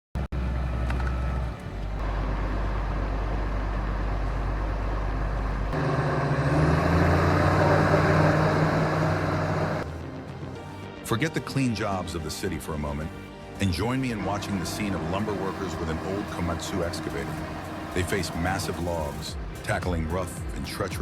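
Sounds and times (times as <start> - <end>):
heavy diesel engine revving: 2.0 - 9.9, 13.7 - 19.6.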